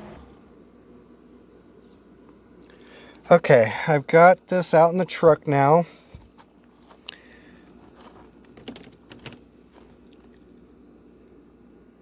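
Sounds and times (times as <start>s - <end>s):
handling clicks and taps: 8.3s - 10.4s.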